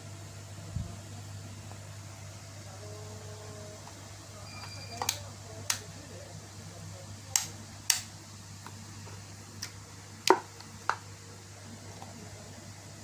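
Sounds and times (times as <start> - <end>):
steady low hum: 0.0 - 13.0
sharp clicks: 7.3 - 8.1.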